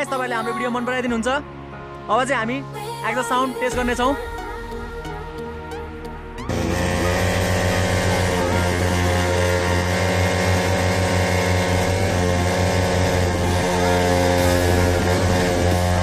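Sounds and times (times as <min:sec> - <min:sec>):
motorcycle engine running: 0:06.5 - 0:16.0.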